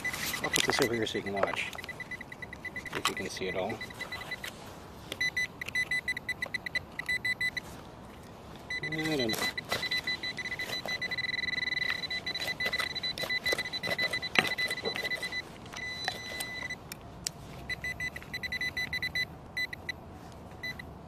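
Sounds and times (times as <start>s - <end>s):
metal detector tone and beeps: 0.0s - 4.5s, 5.2s - 7.7s, 8.7s - 16.8s, 17.7s - 20.0s, 20.6s - 20.9s
digging in soil: 7.0s - 17.7s.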